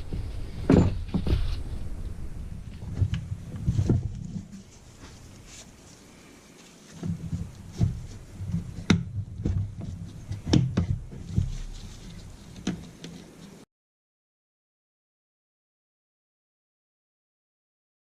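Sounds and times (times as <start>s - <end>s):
handling noise: 0.0s - 13.6s.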